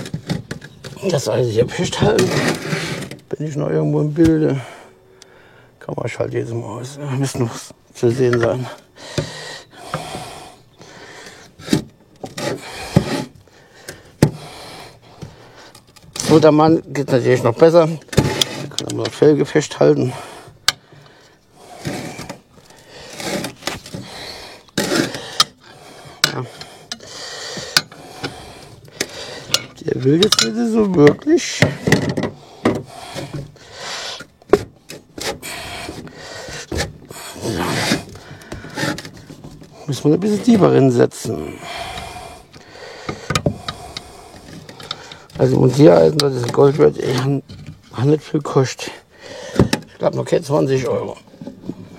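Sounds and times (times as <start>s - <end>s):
rubber tyre scraping on rim: 1.8s - 3.2s.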